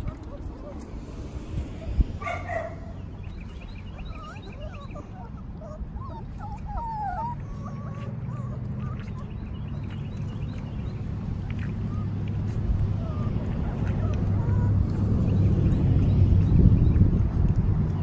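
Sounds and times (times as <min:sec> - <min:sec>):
low rumble: 0:00.0 - 0:06.1
puppies whining and whimpering: 0:00.0 - 0:16.8.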